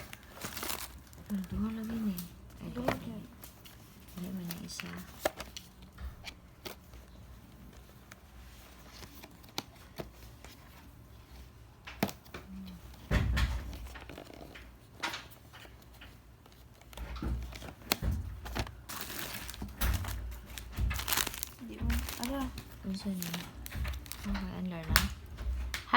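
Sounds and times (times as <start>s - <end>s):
dull thumps: 17.1s - 25.9s.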